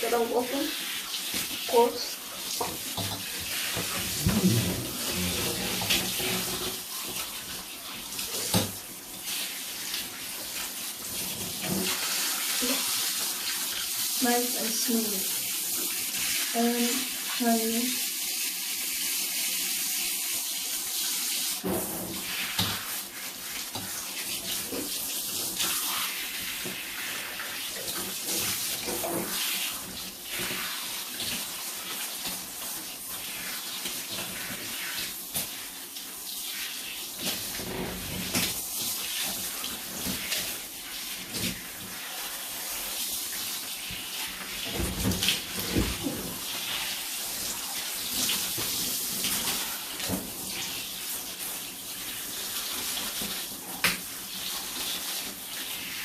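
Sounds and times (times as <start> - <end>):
running water splashing: 0.0 - 56.0.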